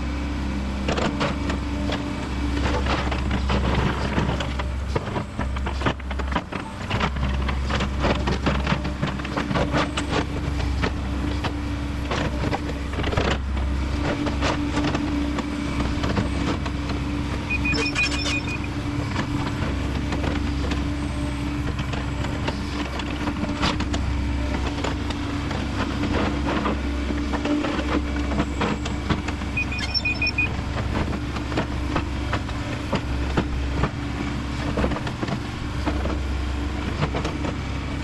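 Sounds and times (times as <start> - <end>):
excavator diesel engine running: 0.0 - 38.0
short beeping tone: 17.4 - 19.3, 29.4 - 30.6.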